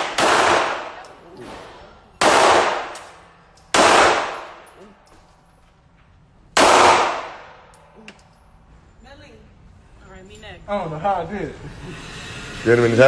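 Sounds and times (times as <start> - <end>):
echoing gunshots: 0.0 - 3.0, 3.7 - 4.6, 6.5 - 7.6.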